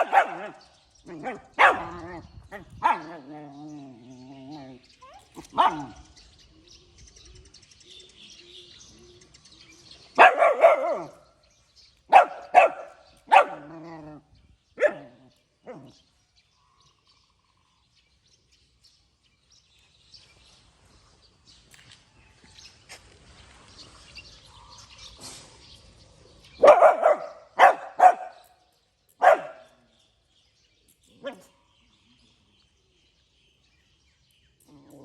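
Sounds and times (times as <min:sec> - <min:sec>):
puppy barking: 0:00.0 - 0:03.3, 0:05.4 - 0:06.0, 0:10.2 - 0:11.2, 0:12.1 - 0:13.8, 0:14.8 - 0:15.9, 0:26.6 - 0:28.4, 0:29.2 - 0:29.8, 0:31.2 - 0:31.5.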